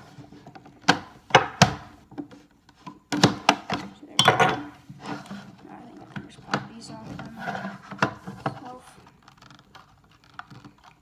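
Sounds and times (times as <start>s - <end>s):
tool prying plastic cover: 0.5s - 5.3s.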